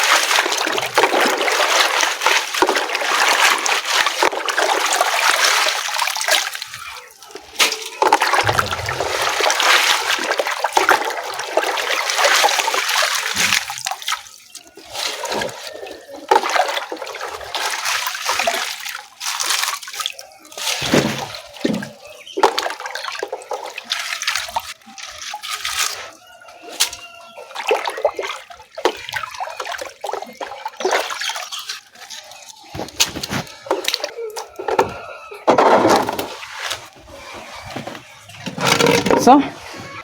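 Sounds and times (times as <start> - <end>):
water pouring and splashing: 0.0 - 40.0
knocks: 8.4 - 9.8.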